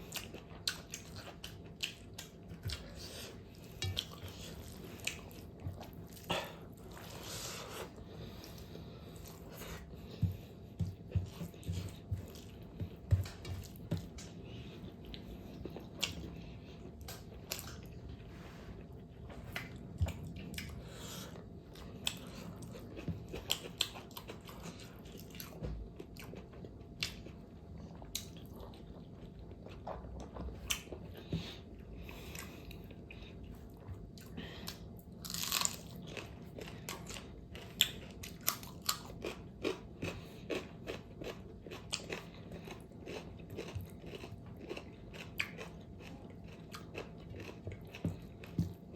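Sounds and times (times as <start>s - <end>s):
wet chewing crunches: 34.2s - 48.9s.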